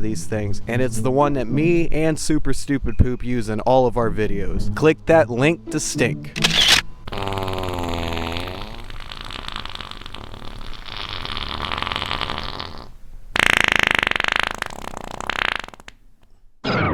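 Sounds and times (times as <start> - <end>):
fart toy farting: 7.1 - 16.1.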